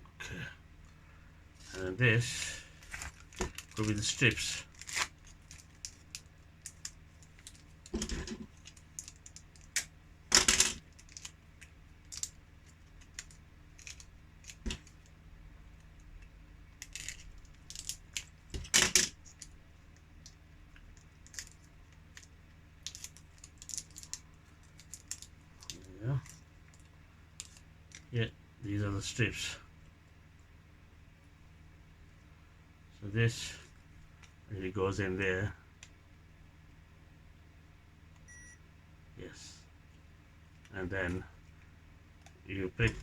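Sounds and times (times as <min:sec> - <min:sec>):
packet rustling: 0:01.6 - 0:11.4, 0:16.8 - 0:19.5, 0:21.0 - 0:28.1.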